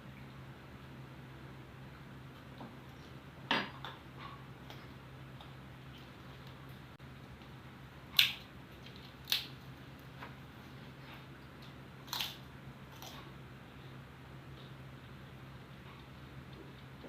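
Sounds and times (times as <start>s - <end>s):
low steady hum: 0.0s - 17.0s
eating clicks and crunches: 8.1s - 10.1s, 11.5s - 13.4s.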